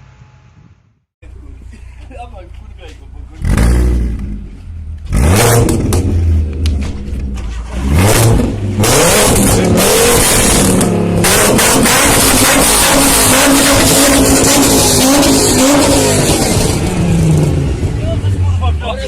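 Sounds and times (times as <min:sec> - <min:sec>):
car engine revving hard: 0:05.1 - 0:06.5, 0:07.6 - 0:18.0.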